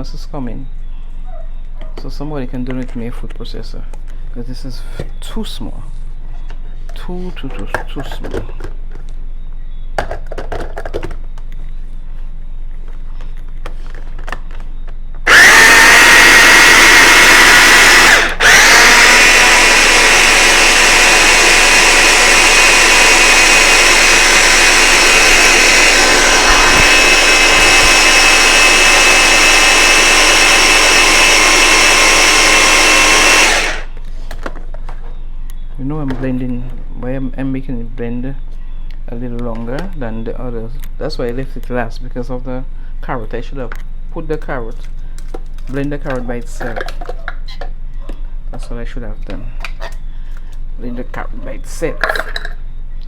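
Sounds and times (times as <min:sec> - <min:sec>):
blender motor running: 0:15.2 - 0:34.0.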